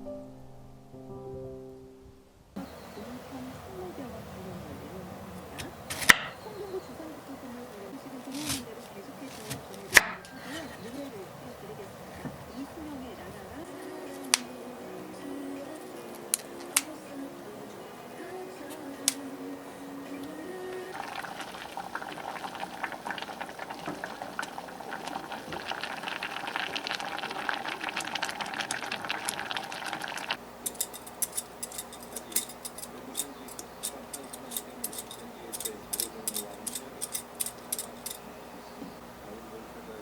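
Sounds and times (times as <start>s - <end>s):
food crackling and bubbling: 20.9s - 38.2s.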